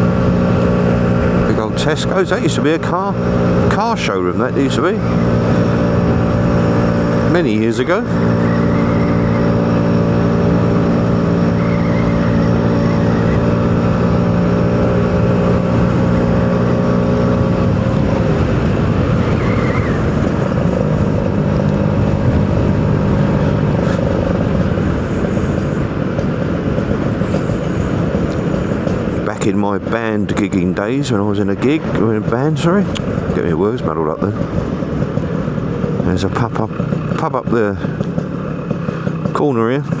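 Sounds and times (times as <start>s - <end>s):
two-stroke engine running: 0.0s - 40.0s.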